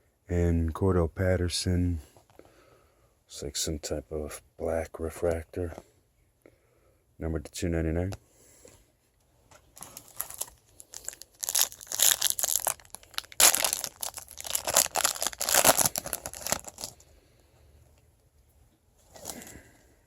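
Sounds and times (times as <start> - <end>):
foil wrapper tearing and crinkling: 9.8 - 17.0.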